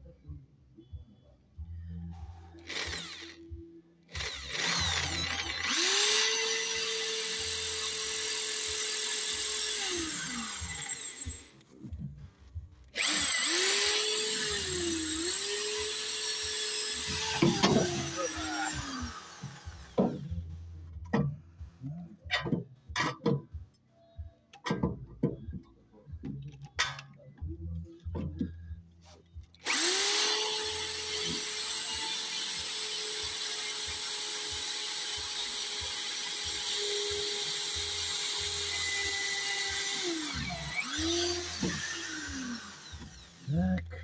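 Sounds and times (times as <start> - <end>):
electric drill running: 2.6 - 3.4, 4.1 - 11.5, 13.0 - 20.0, 29.6 - 43.5
knocks and clicks of tools: 15.8 - 21.7, 24.5 - 28.6, 30.7 - 43.4.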